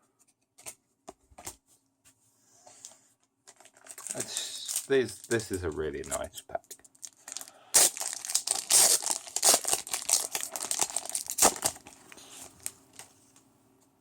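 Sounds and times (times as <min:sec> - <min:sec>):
foil wrapper crinkling and tearing: 0:03.5 - 0:13.1.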